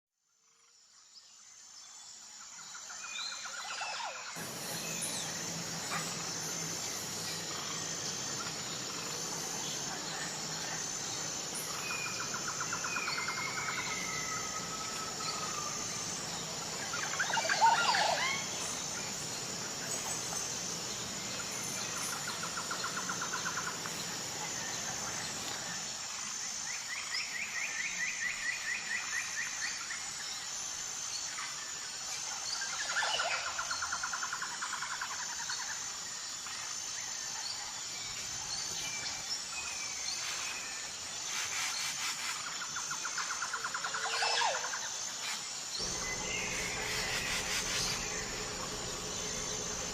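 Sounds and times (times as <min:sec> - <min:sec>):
high-pitched insect drone: 0:00.8 - 0:49.9
birds chirping and trilling: 0:03.1 - 0:25.5, 0:37.5 - 0:49.9.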